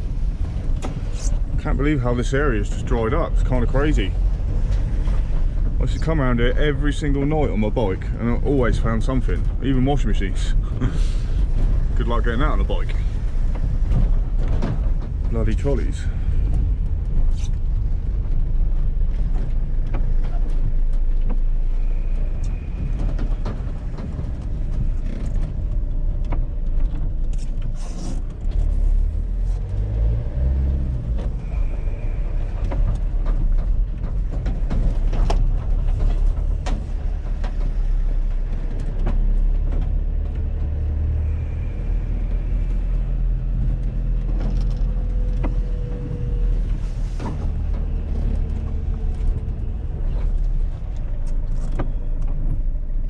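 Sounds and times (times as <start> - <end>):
van engine and road noise: 0.0 - 53.0
light knocks and rattles: 0.1 - 53.0.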